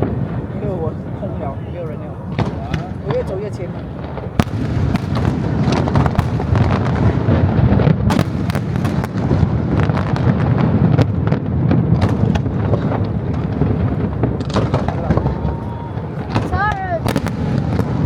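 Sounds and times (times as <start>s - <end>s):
firework cracks and pops: 2.3s - 18.0s
firework shell bursts rumbling: 2.3s - 18.0s.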